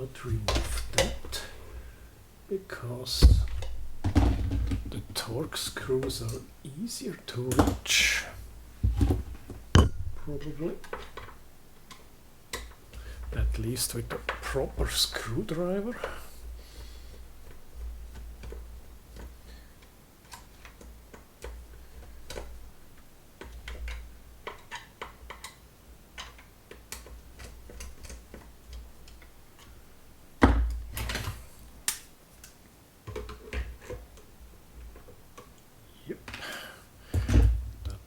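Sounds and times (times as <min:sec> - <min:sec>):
handling rumble: 0:03.1 - 0:05.2
knock on plastic: 0:03.2 - 0:04.9, 0:08.8 - 0:10.3.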